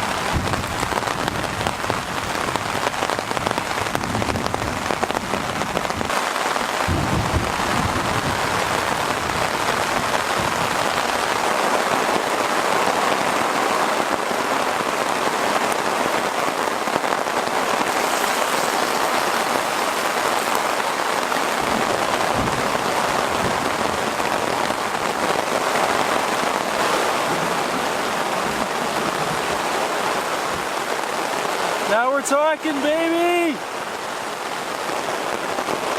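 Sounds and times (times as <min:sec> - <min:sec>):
low thunder rumbles: 0:00.0 - 0:06.1, 0:06.7 - 0:11.6, 0:17.8 - 0:30.7
heavy rain pouring: 0:00.0 - 0:35.9.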